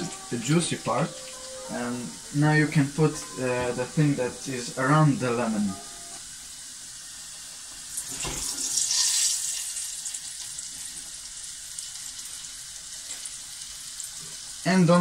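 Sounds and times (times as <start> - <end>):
potatoes sizzling in hot oil: 6.2 - 15.0.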